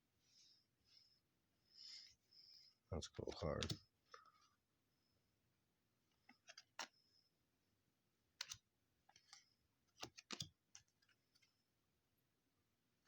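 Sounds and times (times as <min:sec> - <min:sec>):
trading cards clicking and snapping: 0:06.3 - 0:06.9, 0:08.4 - 0:11.5.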